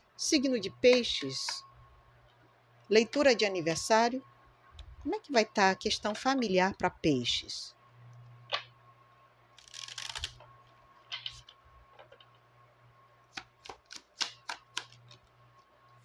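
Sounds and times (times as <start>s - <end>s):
faint low hum: 0.0s - 13.3s
card clicks and taps: 13.4s - 15.2s.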